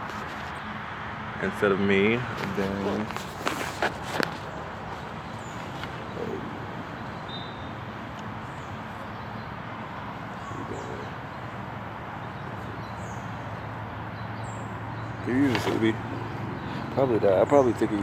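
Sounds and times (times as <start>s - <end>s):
city background noise: 0.0s - 18.0s
brief low calls: 15.2s - 18.0s.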